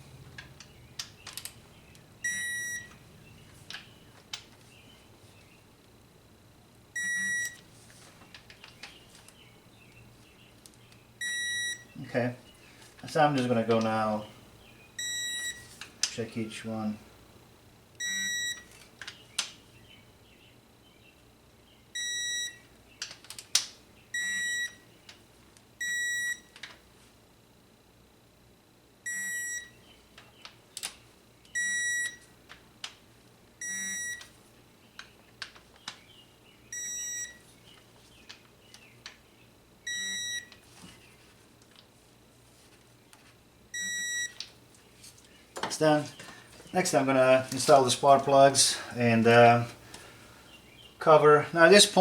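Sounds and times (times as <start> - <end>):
torque wrench beeping: 2.2 - 3.0, 7.0 - 7.6, 11.2 - 11.9, 15.0 - 15.7, 18.0 - 18.7, 22.0 - 22.6, 24.1 - 24.8, 31.5 - 32.3, 33.6 - 34.3, 36.7 - 37.4, 39.9 - 40.5, 43.8 - 44.4.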